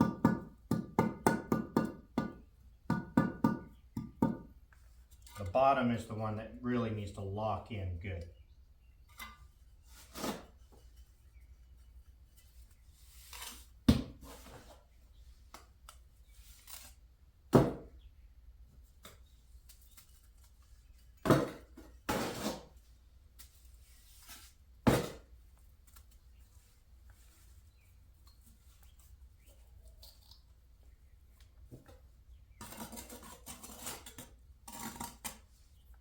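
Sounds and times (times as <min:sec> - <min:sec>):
trowel knocking bricks: 0:00.0 - 0:04.5
trowel scraping mortar: 0:13.0 - 0:14.7, 0:22.1 - 0:22.7, 0:32.6 - 0:35.5.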